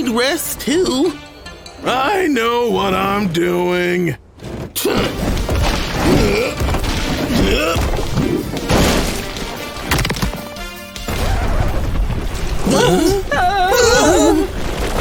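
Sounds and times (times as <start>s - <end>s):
crashing and thudding effects: 4.4s - 12.9s, 14.4s - 15.0s.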